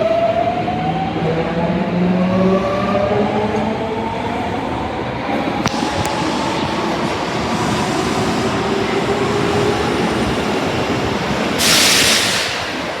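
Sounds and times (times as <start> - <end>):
subway train noise: 0.0 - 13.0
sharp burst of hiss: 5.7 - 13.0.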